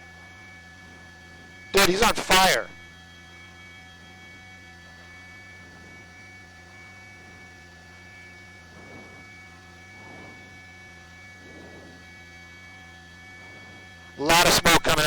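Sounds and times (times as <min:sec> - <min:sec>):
helicopter cabin hum: 0:01.8 - 0:02.8, 0:13.4 - 0:15.0
faint murmurs: 0:13.6 - 0:15.0.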